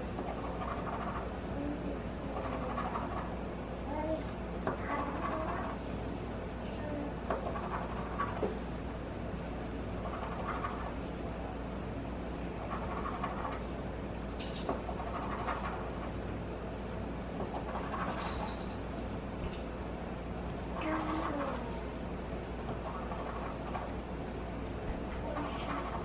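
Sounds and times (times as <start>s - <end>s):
lottery ticket being scratched: 2.3s - 3.3s, 10.1s - 11.0s, 12.6s - 13.6s, 20.8s - 21.6s.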